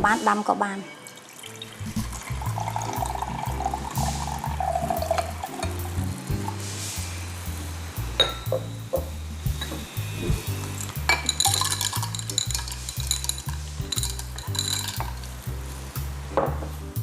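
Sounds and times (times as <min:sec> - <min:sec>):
background music with bass line: 0:00.0 - 0:00.5, 0:01.7 - 0:17.0
utensil stirring in a pot: 0:01.1 - 0:08.6, 0:09.2 - 0:16.0
scraping and clinking: 0:10.6 - 0:15.4.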